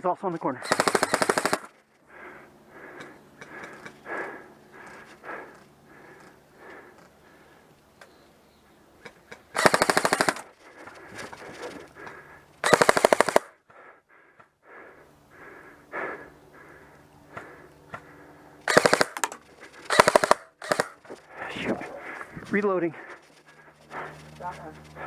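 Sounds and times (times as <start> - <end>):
airsoft rifle bursts: 0.6 - 1.8, 9.5 - 10.6, 12.6 - 13.6, 18.6 - 21.2.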